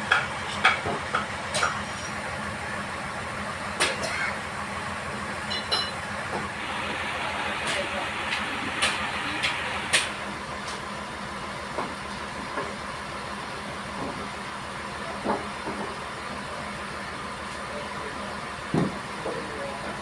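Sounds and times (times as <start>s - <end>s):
sawmill engine running: 0.0s - 20.0s.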